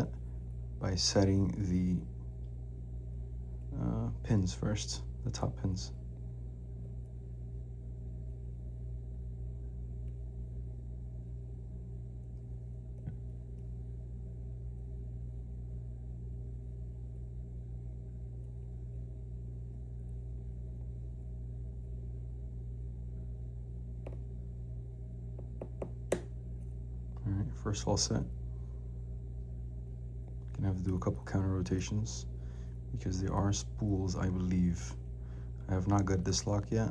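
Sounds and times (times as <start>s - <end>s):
steady low hum: 0.0s - 36.9s.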